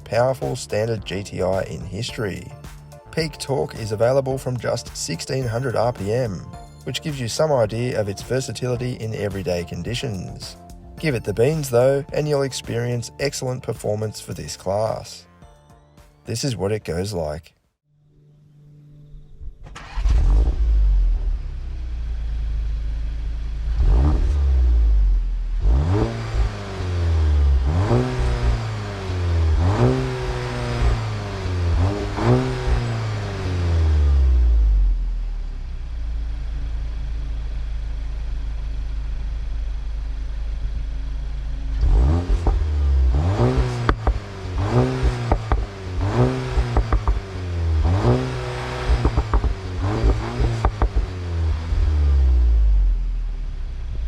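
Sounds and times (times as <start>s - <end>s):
car engine revving: 19.1s - 54.0s.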